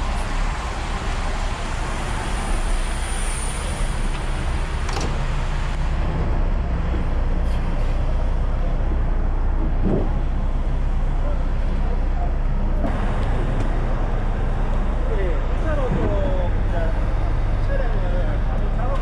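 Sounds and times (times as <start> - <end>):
truck diesel engine running: 0.0 - 19.0.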